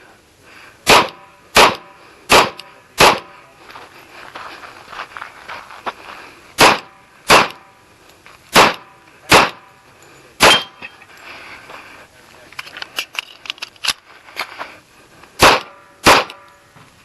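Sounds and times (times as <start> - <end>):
pistol shots: 0.8 - 3.4, 6.6 - 7.7, 8.5 - 9.8, 10.4 - 10.8, 15.4 - 16.5.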